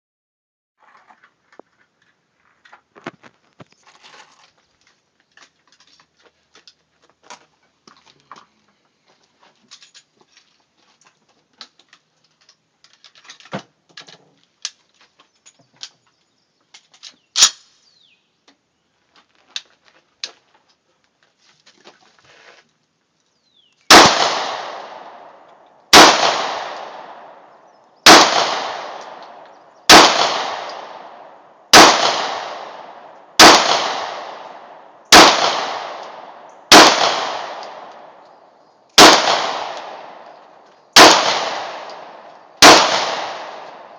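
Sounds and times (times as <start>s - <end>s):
handling clicks and knocks: 2.8s - 8.5s
rifle gunshots echoing: 23.9s - 38.2s, 39.0s - 43.9s.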